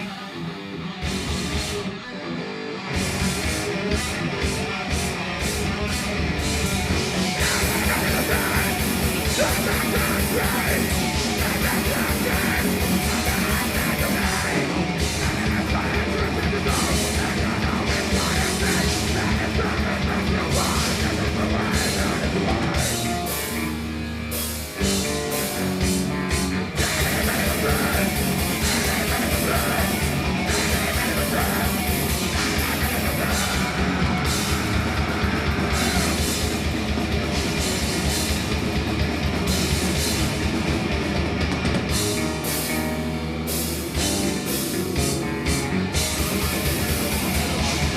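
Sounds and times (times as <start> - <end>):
distorted electric guitars: 0.0 - 47.9
metal band playing live: 0.0 - 47.9
fast drumming: 3.0 - 23.6, 24.8 - 42.8, 43.6 - 47.9.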